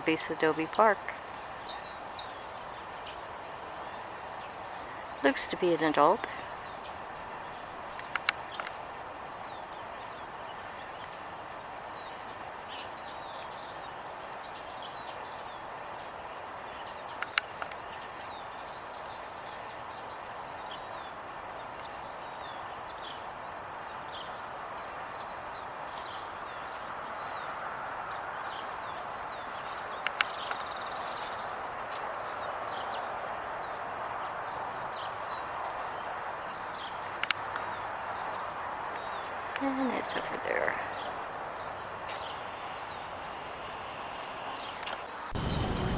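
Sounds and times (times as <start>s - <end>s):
small birds chirping: 0.0s - 45.9s
sharp clicks: 17.2s - 17.8s, 37.2s - 37.6s, 42.1s - 45.9s
outdoor background hum: 37.0s - 45.9s.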